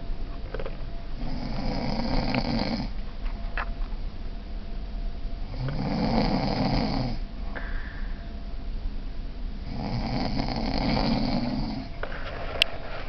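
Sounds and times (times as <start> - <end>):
man snoring: 1.2 - 2.9, 5.5 - 7.2, 9.7 - 11.9.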